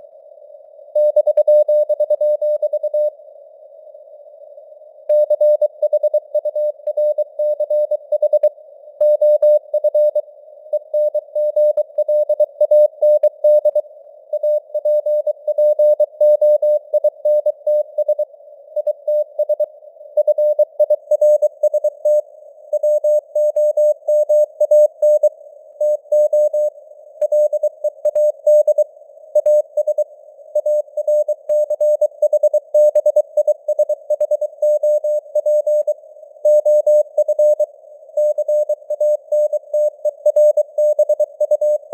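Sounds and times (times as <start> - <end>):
faint radio hiss: 0.0 - 1.0, 3.1 - 5.1, 18.2 - 18.8.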